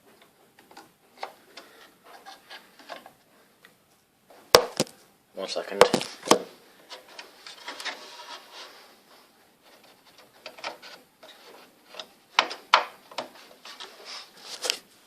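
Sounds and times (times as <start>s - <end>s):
soft rubbing and knocks: 6.9s - 12.5s.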